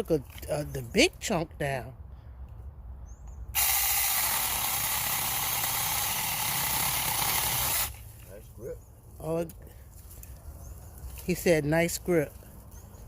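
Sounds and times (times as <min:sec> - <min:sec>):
mini chainsaw running: 0:03.6 - 0:08.0.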